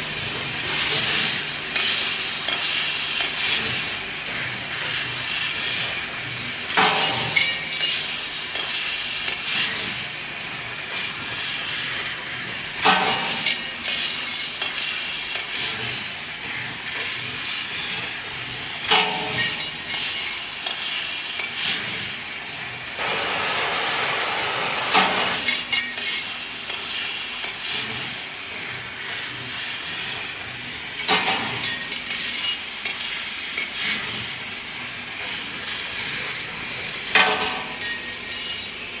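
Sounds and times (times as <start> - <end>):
machinery hissing: 23.0 - 25.8
sharp metallic clanks: 23.0 - 26.2.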